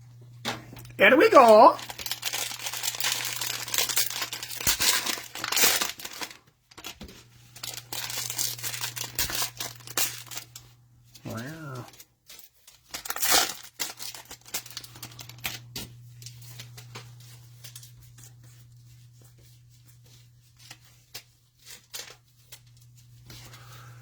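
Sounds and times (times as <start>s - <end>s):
plastic crinkling: 0.8s - 10.7s, 11.9s - 23.9s
cellophane wrapper tearing: 0.9s - 10.7s, 11.3s - 17.0s.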